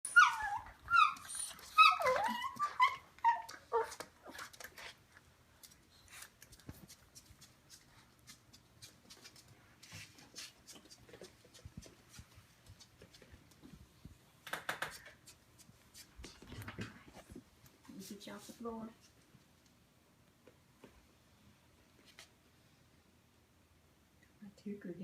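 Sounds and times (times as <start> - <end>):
dog whining yelps: 0.0 - 4.4.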